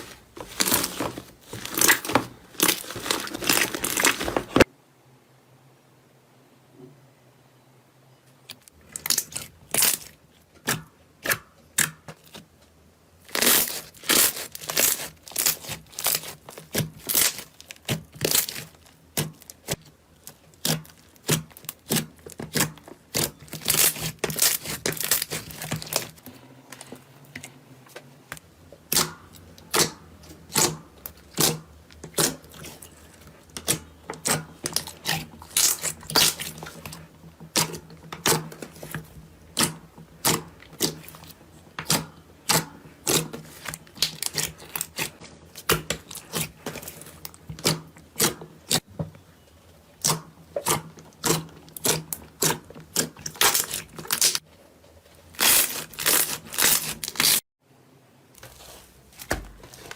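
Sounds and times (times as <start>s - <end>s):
slime crackling and popping: 13.3s - 26.2s, 33.6s - 38.8s, 41.8s - 48.8s.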